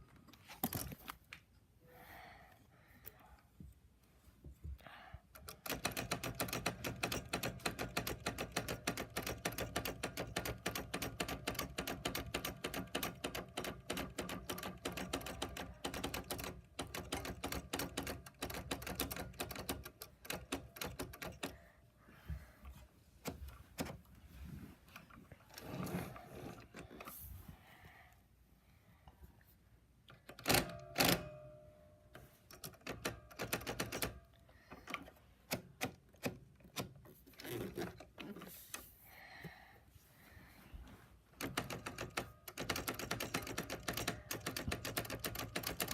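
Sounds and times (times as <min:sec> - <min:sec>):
typewriter typing: 0:05.4 - 0:21.6, 0:30.3 - 0:31.4, 0:32.5 - 0:34.2, 0:41.4 - 0:45.9.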